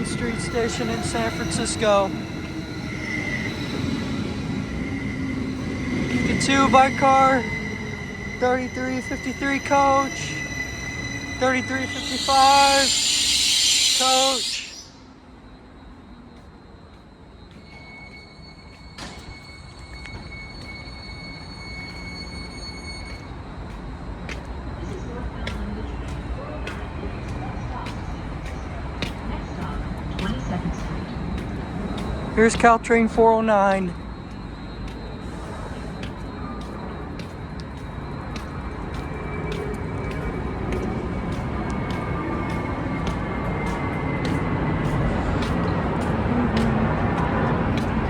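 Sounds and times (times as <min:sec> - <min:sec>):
faint high steady tone: 0:00.0 - 0:23.4
high-pitched whine: 0:00.0 - 0:29.2, 0:30.1 - 0:48.0
train low rumble: 0:00.0 - 0:48.0.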